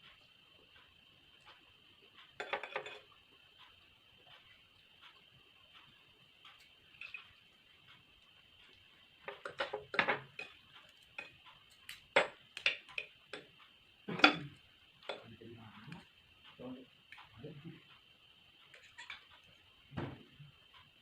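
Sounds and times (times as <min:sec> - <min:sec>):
utensils clicking against dish: 0:02.2 - 0:03.8, 0:06.5 - 0:07.4, 0:09.2 - 0:16.1, 0:18.7 - 0:19.5.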